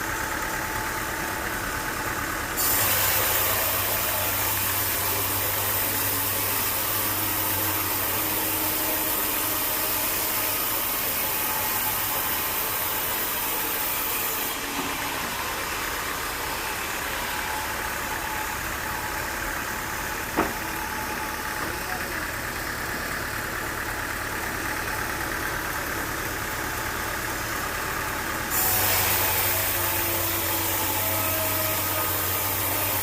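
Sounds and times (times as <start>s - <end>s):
sawmill machinery running: 0.0s - 33.0s
loud hiss: 2.6s - 18.3s, 28.5s - 33.0s
sharp knock: 20.3s - 20.7s.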